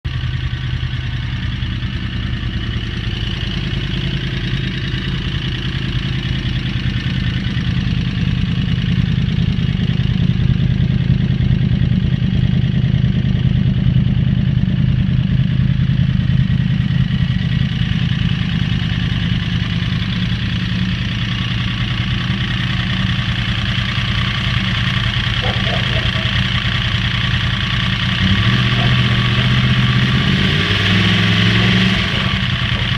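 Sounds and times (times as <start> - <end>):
motorcycle engine idling: 0.0 - 32.9
loud mechanical noise: 25.4 - 27.2, 27.9 - 32.9.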